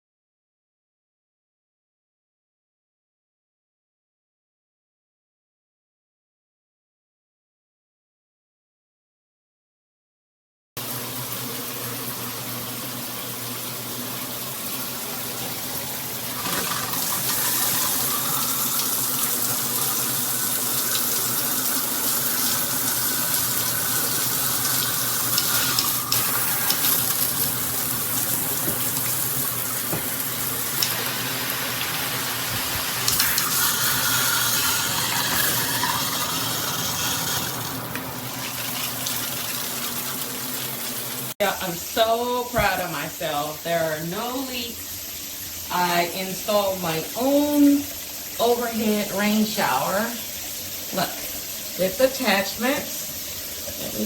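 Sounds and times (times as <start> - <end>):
shower head spraying water: 16.0 - 41.4.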